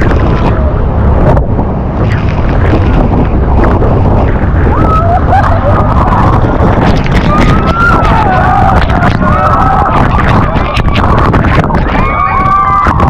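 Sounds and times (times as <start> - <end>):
speedboat rushing: 0.0 - 13.0
wind buffeting microphone: 0.0 - 13.0
people crying out: 4.6 - 13.0.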